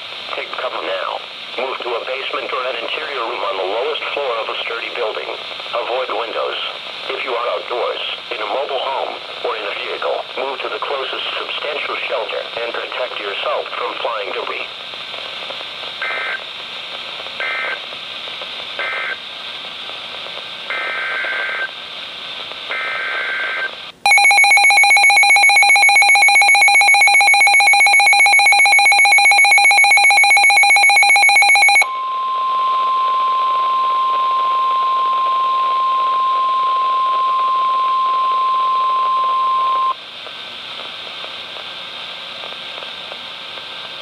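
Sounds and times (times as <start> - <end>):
low radio hiss: 0.0 - 24.1, 30.8 - 44.0
rapidly pulsing electronic alarm: 22.7 - 40.0
steady warning alarm tone: 22.7 - 40.0.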